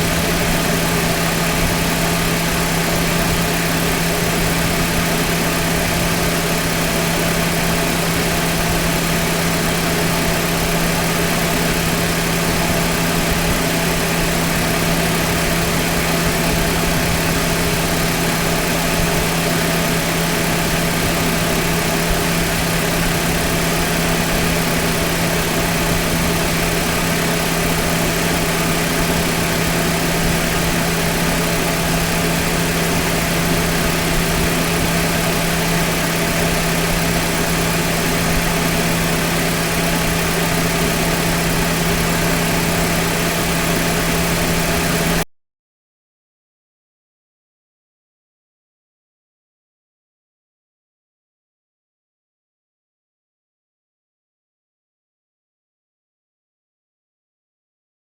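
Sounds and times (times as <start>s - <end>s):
car engine idling: 0.0s - 45.2s.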